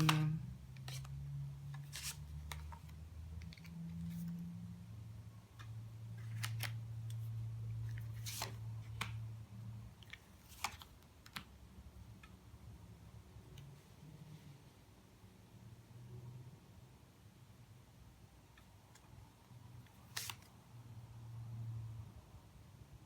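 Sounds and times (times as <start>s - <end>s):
cards clicking and snapping: 1.8s - 4.4s, 5.6s - 7.2s, 7.8s - 9.2s, 10.0s - 11.5s, 20.1s - 20.5s.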